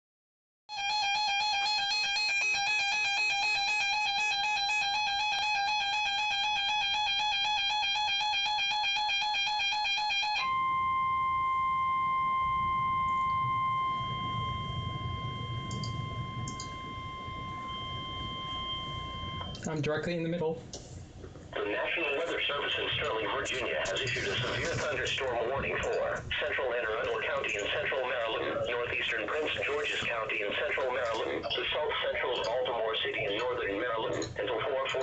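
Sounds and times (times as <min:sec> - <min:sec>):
warbling electronic alarm: 0:00.7 - 0:19.6, 0:22.7 - 0:34.3
steady warning tone: 0:00.7 - 0:19.8, 0:21.6 - 0:35.0.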